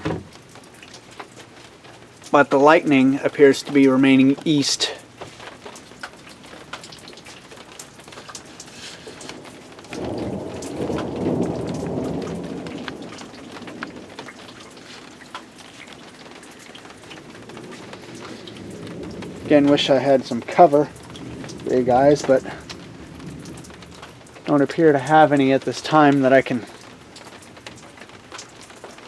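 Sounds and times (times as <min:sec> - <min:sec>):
steady rain falling: 0:00.0 - 0:29.0
thunder rolling: 0:08.7 - 0:25.7.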